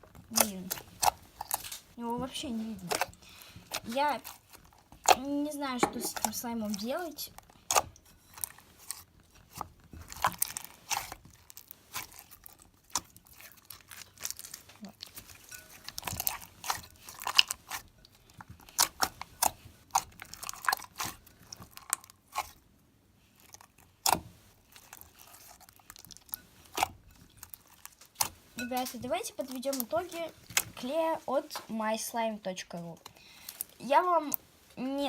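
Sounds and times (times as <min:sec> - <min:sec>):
slime clicking and popping: 0:02.8 - 0:08.1, 0:18.6 - 0:22.5, 0:23.4 - 0:30.8.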